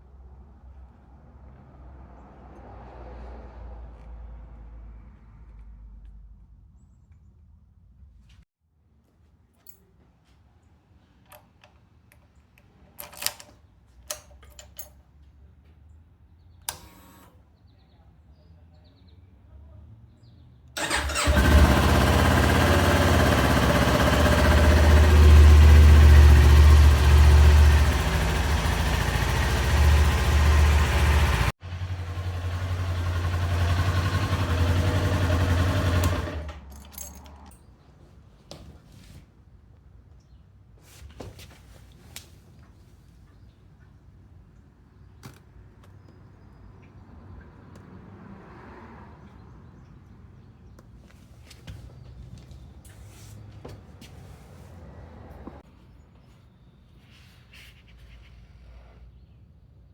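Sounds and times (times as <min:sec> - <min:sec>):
motorcycle engine idling: 0:20.8 - 0:36.6.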